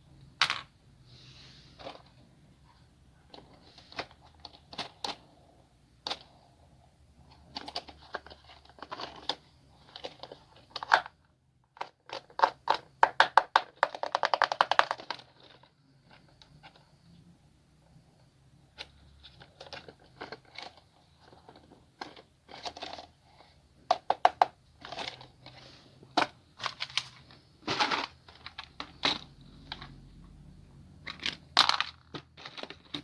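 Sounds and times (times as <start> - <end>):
plastic and cardboard packaging crinkling: 24.8 - 30.0.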